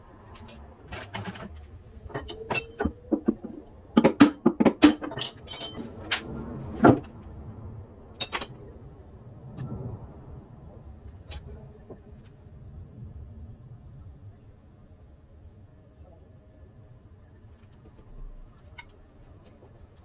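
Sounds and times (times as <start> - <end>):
metallic clinks of tools: 8.2 - 8.5.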